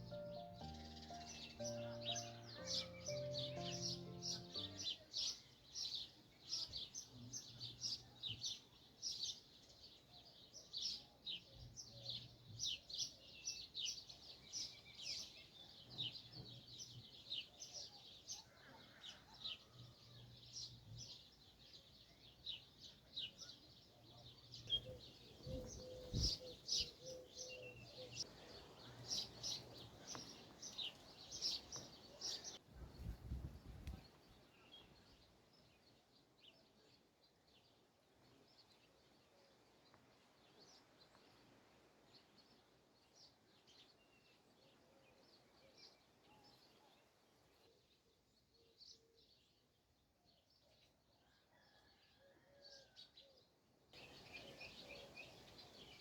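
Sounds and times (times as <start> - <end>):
small birds chirping: 0.0 - 41.4, 54.0 - 56.0.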